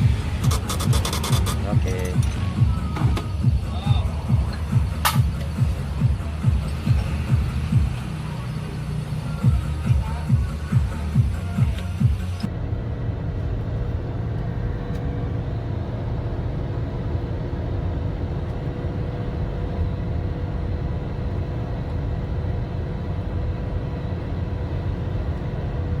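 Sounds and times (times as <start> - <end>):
diesel engine rumbling: 0.0 - 26.0
clutch fan humming: 8.8 - 26.0.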